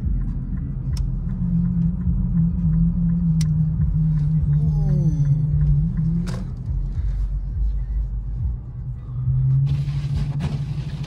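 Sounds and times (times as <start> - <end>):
faint regular ticking: 0.0 - 7.6
car engine cabin rumble: 0.0 - 11.0.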